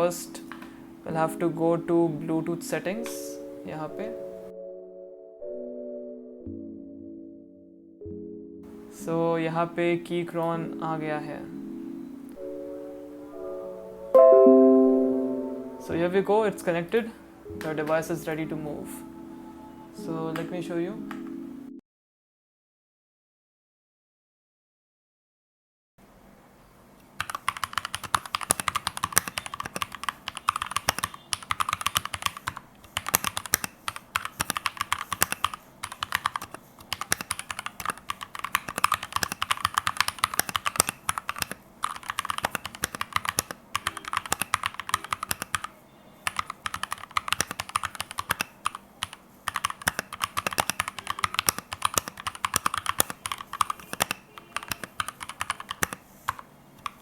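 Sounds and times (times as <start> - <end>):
fast typing on mechanical keyboard: 27.2 - 57.0.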